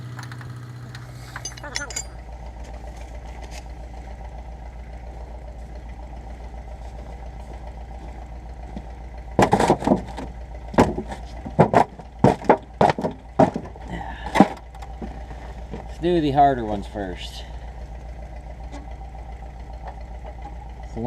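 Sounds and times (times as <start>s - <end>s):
engine idling: 0.0s - 21.0s
sharp metal knocks and clanks: 1.3s - 2.3s, 8.7s - 15.1s.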